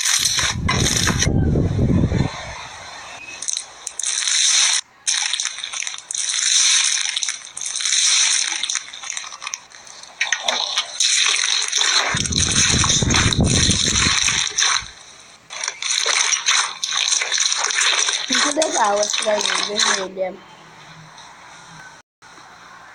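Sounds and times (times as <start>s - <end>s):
slime squished crackling and popping: 0.0s - 1.3s, 3.4s - 20.1s
low-pitched noise: 0.4s - 3.3s, 12.1s - 15.0s.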